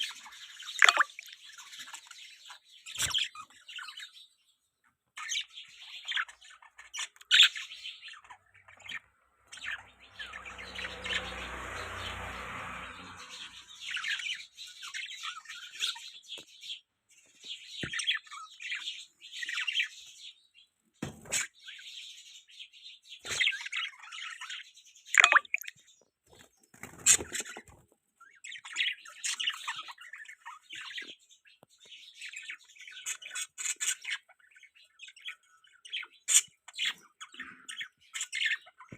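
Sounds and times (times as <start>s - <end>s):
budgerigars chirping: 5.1s - 12.1s, 13.2s - 20.7s, 28.3s - 38.9s.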